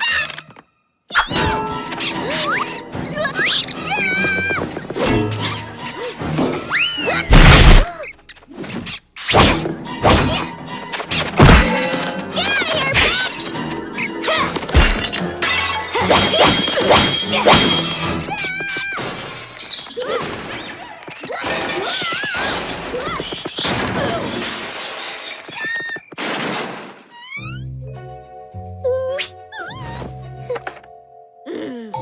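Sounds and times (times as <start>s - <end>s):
crashes and glass smashing: 23.6s - 25.5s.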